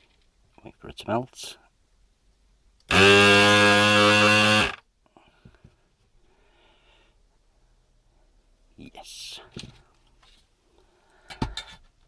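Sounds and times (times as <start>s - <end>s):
vacuum pump buzzing: 2.9s - 4.8s.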